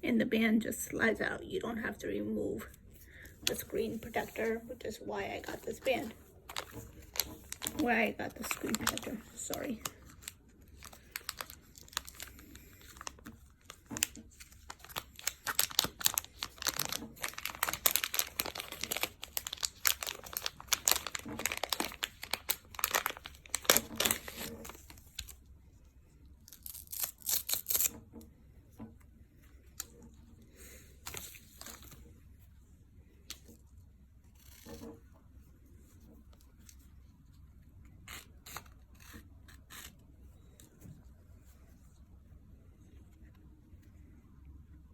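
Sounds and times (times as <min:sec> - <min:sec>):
crinkling and ripping handling: 0:05.4 - 0:25.4, 0:26.4 - 0:28.1, 0:29.5 - 0:32.1, 0:34.4 - 0:35.1.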